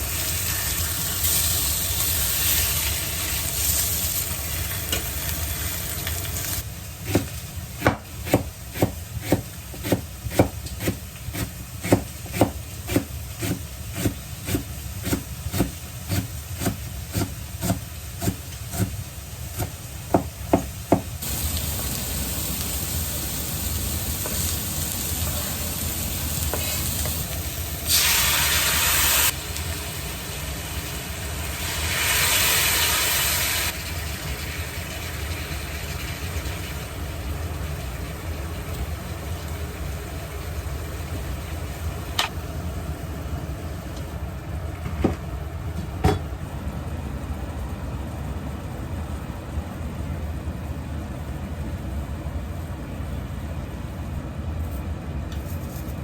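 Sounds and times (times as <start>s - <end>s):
food sizzling in a frying pan: 0.0s - 11.8s, 20.6s - 42.1s.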